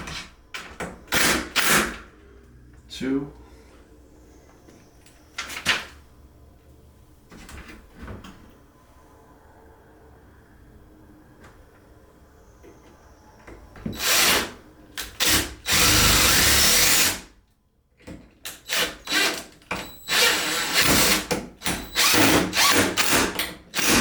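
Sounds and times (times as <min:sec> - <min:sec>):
power drill driving screw into wood: 0:01.1 - 0:02.0, 0:13.9 - 0:17.3, 0:18.5 - 0:24.0.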